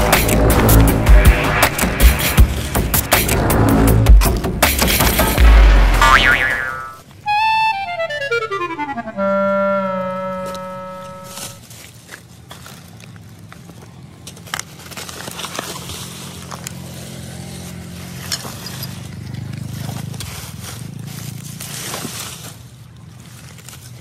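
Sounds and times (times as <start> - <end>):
low engine hum: 0.0 - 5.8
rubbish being rummaged through: 11.4 - 24.0.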